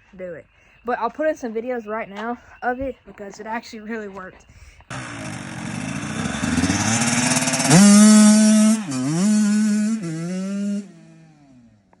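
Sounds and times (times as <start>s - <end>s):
dirt bike engine revving: 4.9s - 11.7s.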